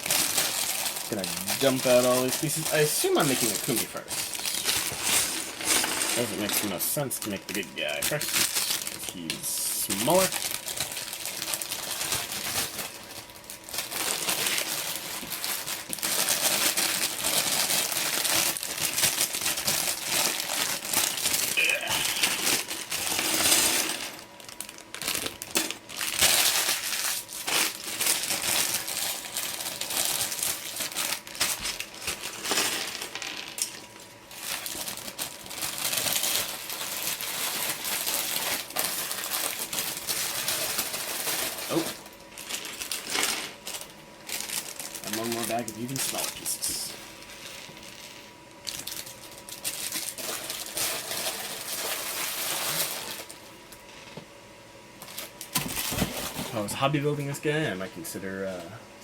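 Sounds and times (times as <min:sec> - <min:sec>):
plastic pieces clattering: 0:00.0 - 0:07.0, 0:09.9 - 0:33.8
plastic bags crinkling: 0:00.0 - 0:54.1, 0:55.0 - 0:57.5.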